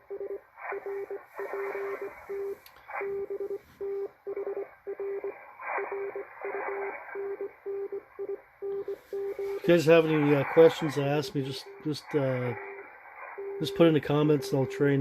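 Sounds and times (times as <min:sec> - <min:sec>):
morse code beeps: 0:00.0 - 0:15.0
static crackles: 0:00.0 - 0:15.0
radio band hiss: 0:00.6 - 0:03.9, 0:08.9 - 0:15.0.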